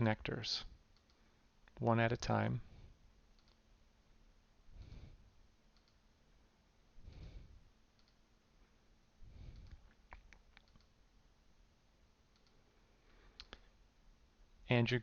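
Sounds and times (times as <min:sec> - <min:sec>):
soft puffs of low noise: 0:00.0 - 0:15.0
faint mouse clicks: 0:00.9 - 0:01.8, 0:03.4 - 0:03.6, 0:05.7 - 0:06.0, 0:08.0 - 0:08.2, 0:09.5 - 0:11.0, 0:12.3 - 0:12.6, 0:13.2 - 0:13.7.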